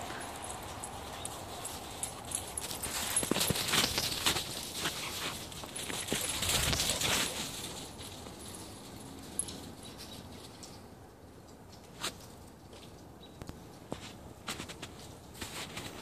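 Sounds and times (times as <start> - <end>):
paws crunching through snow: 0.1 - 7.5, 13.9 - 16.0.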